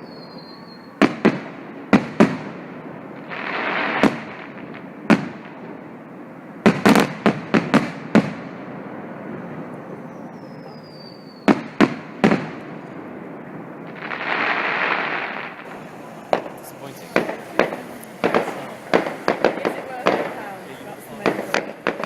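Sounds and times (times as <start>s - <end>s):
falling firework whistle: 0.0s - 1.3s, 9.4s - 12.5s
distant fireworks: 0.0s - 22.0s
fireworks banging: 0.9s - 22.0s
firework hissing rush: 3.2s - 5.0s, 13.9s - 22.0s.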